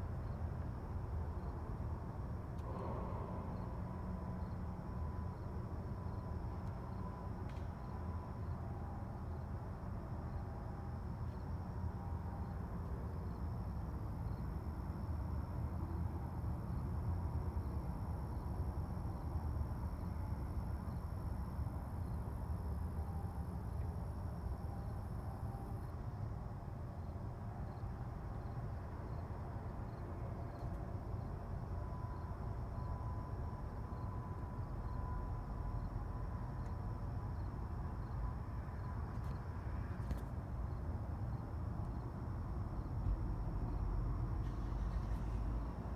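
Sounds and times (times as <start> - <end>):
low rumble: 2.5 - 6.6
insect trill: 2.6 - 45.9.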